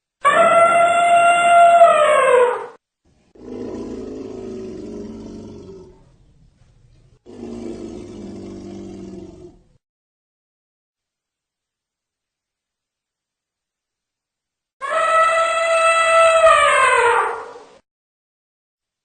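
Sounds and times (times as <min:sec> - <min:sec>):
elephant roaring calls: 0:03.4 - 0:06.1, 0:07.2 - 0:09.8.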